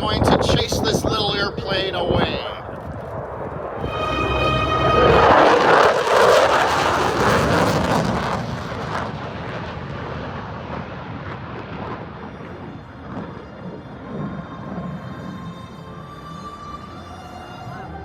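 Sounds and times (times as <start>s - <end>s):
jet aircraft passing: 2.5s - 13.8s.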